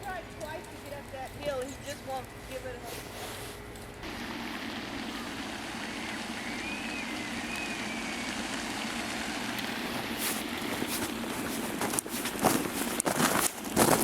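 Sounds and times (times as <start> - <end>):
truck engine running: 4.0 - 14.0.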